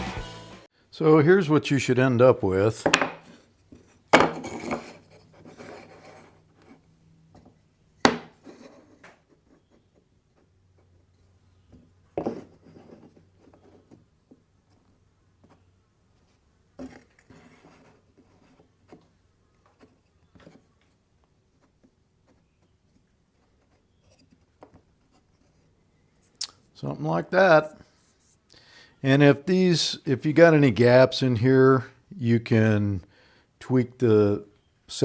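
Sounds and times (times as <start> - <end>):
wooden knocks: 2.8 - 3.2.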